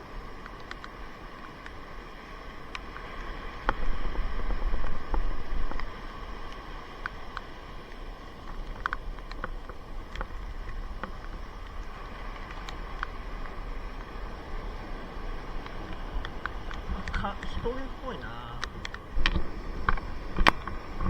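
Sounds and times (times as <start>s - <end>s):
light clicks: 0.4s - 1.8s, 4.8s - 14.1s, 15.6s - 17.7s, 18.5s - 20.8s
wind buffeting microphone: 9.2s - 21.0s.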